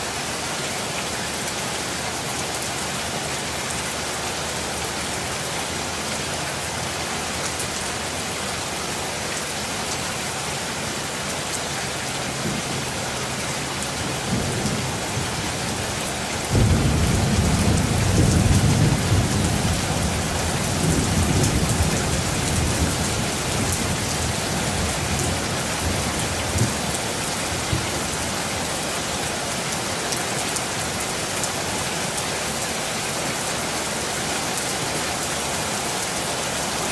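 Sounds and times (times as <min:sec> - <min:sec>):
steady rain: 0:00.0 - 0:36.9
thunder rumbling: 0:14.0 - 0:28.2.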